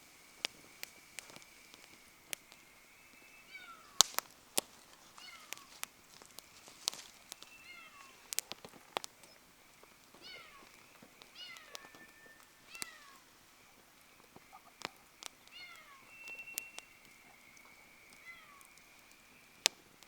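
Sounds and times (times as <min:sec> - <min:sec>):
wood fire crackling and popping: 0:00.0 - 0:20.0
animal meow-like calls: 0:03.5 - 0:04.0, 0:05.2 - 0:05.7, 0:07.6 - 0:08.2, 0:10.2 - 0:10.8, 0:11.4 - 0:13.2, 0:14.9 - 0:16.6, 0:18.1 - 0:18.7.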